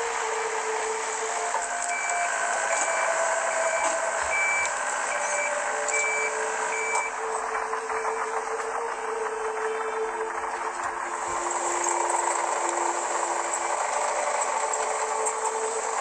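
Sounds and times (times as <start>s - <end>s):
diesel engine running: 0.0s - 16.0s
excavator travel alarm beeping: 1.4s - 10.8s.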